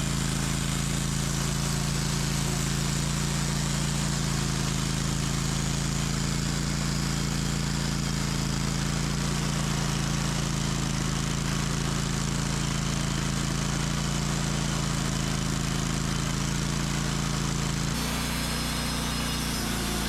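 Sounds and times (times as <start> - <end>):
bandsaw sawmill cutting log: 0.0 - 11.7, 17.9 - 20.0.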